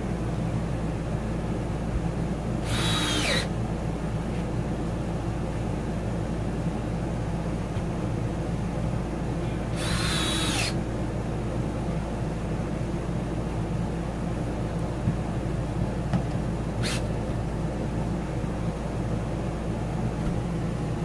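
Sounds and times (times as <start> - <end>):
cordless drill driving screws: 2.6 - 3.5, 9.8 - 10.8.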